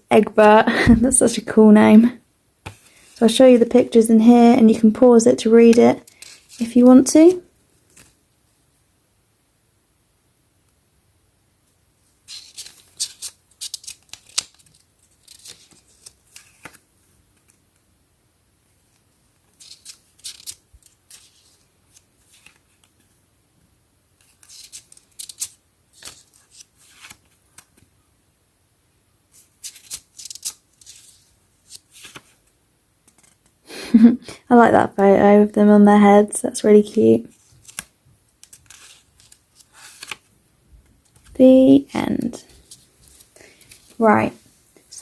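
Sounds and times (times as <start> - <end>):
paper pages turning: 5.5 - 7.0, 7.8 - 8.2, 12.2 - 17.8, 18.9 - 23.2, 24.2 - 27.9, 29.3 - 33.6, 37.3 - 40.3, 40.9 - 41.4, 42.1 - 44.1.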